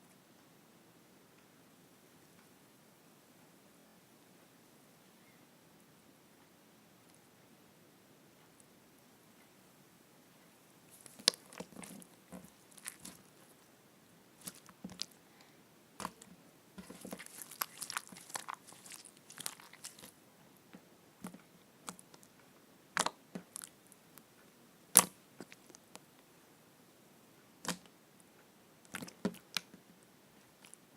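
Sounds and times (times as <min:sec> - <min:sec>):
slime squelching: 0:10.9 - 0:13.6, 0:14.4 - 0:15.2, 0:16.0 - 0:20.2, 0:21.3 - 0:22.3, 0:22.9 - 0:23.8, 0:24.9 - 0:25.9, 0:27.6 - 0:27.9, 0:28.8 - 0:29.7
slime popping: 0:11.0 - 0:13.4, 0:14.4 - 0:15.2, 0:16.0 - 0:16.2, 0:16.8 - 0:20.1, 0:23.0 - 0:23.7, 0:24.9 - 0:25.8, 0:28.9 - 0:29.6.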